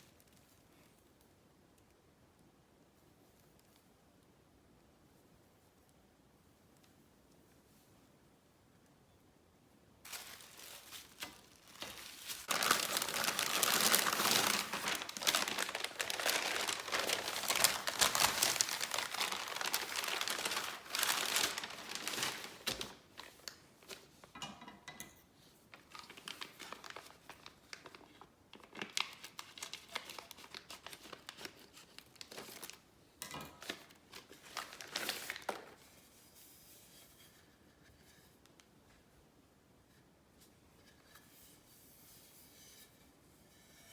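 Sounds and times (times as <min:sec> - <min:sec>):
packaging crinkling by hand: 0:10.0 - 0:24.3, 0:25.7 - 0:32.9, 0:33.5 - 0:35.9.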